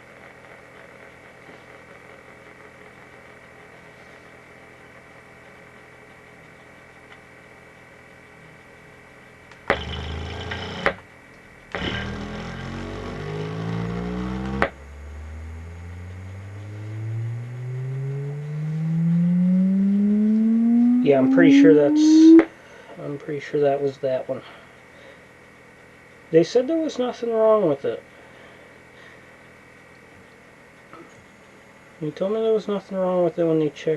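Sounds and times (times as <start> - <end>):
faint hum: 0.0 - 33.9
rough buzzing distortion: 9.5 - 22.9
subwoofer test-tone sweep: 11.5 - 22.5.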